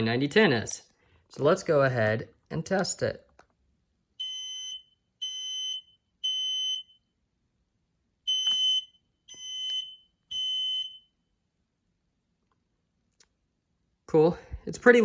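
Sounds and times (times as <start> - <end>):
smoke alarm beeping: 4.2 - 7.1, 8.2 - 11.3.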